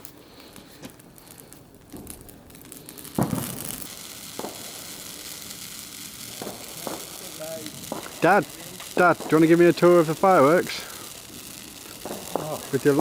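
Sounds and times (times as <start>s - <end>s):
bonfire crackling and hissing: 0.0s - 13.0s.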